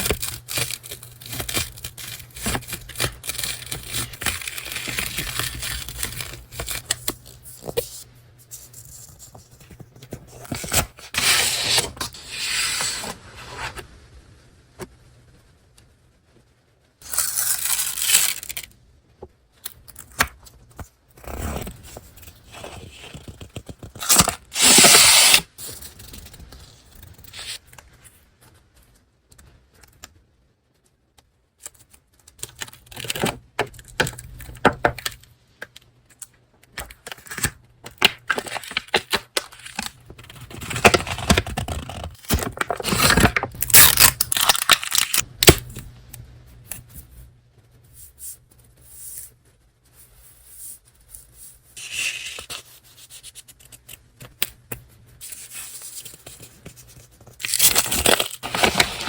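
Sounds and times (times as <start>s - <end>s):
paper and packaging rustling: 0.0s - 13.9s, 17.0s - 18.7s, 21.6s - 29.0s, 36.8s - 45.6s, 55.2s - 59.0s.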